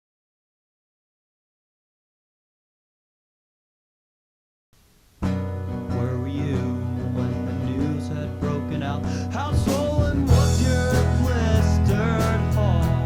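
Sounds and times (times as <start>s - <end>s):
guitar-led song: 5.2s - 13.0s.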